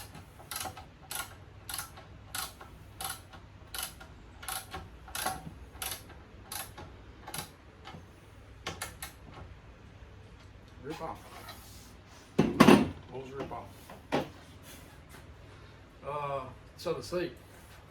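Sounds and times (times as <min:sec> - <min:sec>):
ratchet wrench clicking: 0:00.0 - 0:07.5.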